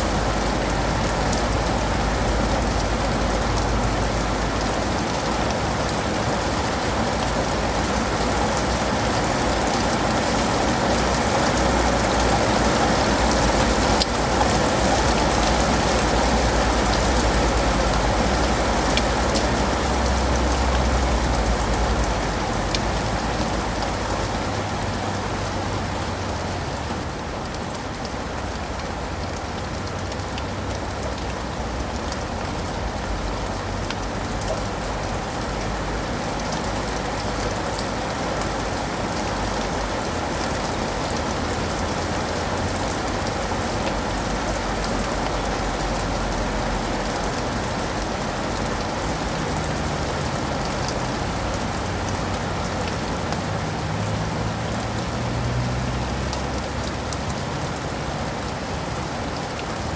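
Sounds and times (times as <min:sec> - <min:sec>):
rain on leaves and pavement: 0:00.0 - 0:59.9.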